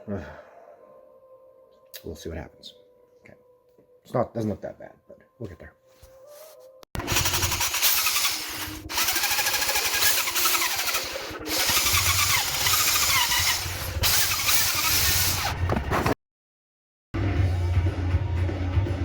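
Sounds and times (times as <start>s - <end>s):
power drill grinding valve: 7.0s - 16.1s.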